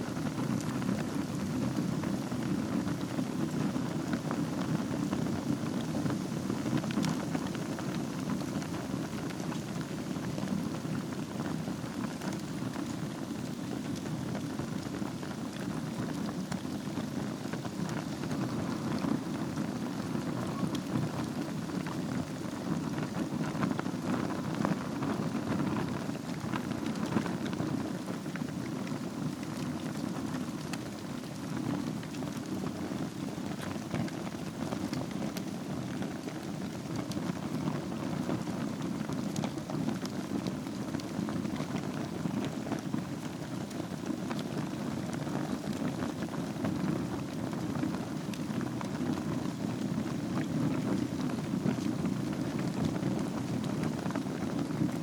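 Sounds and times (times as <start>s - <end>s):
low rush of fire: 0.0s - 55.0s
wood fire crackling and popping: 0.0s - 55.0s.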